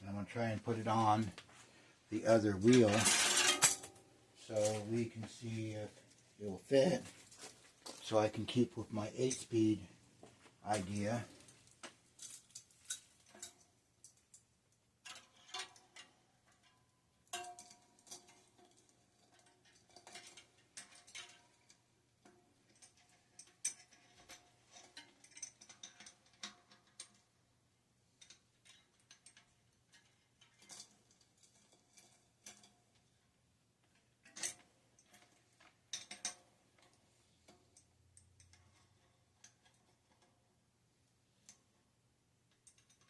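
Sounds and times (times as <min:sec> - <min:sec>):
metallic clicks of tools: 0:42.5 - 0:43.0.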